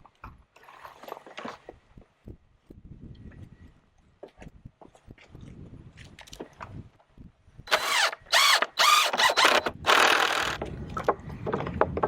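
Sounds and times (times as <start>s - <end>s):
power drill driving screws: 7.7s - 10.6s.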